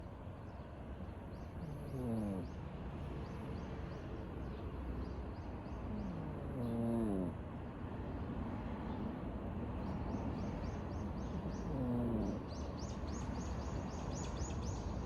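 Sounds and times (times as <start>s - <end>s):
cat snoring: 1.6s - 2.5s, 6.0s - 7.4s, 11.3s - 12.4s.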